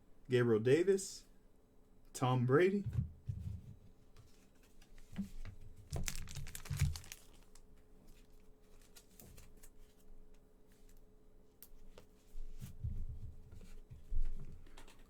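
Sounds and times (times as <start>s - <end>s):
wrapper crinkling and tearing: 5.8s - 7.6s.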